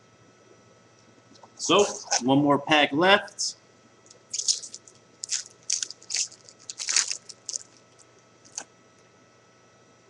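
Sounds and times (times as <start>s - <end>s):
wrapper crinkling and tearing: 4.3s - 8.6s.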